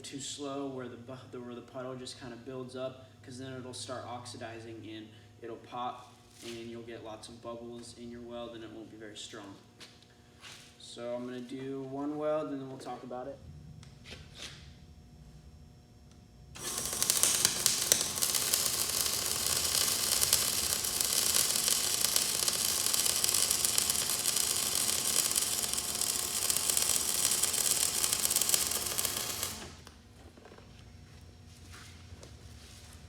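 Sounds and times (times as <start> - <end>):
welding arc crackling: 16.6 - 30.0.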